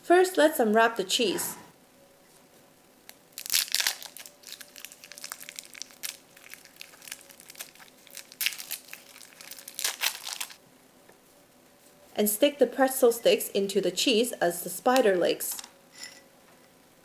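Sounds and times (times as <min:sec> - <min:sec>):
wrapper crinkling and tearing: 0:03.3 - 0:10.6.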